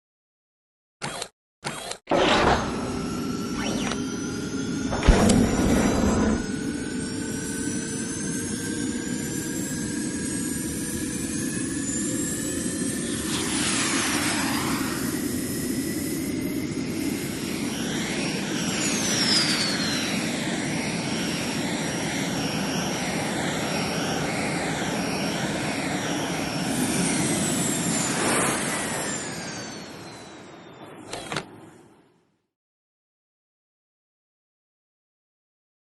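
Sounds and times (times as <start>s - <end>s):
jet pack thrust with whining: 1.0s - 9.4s, 10.6s - 31.8s
whooshing sweep: 13.0s - 16.0s.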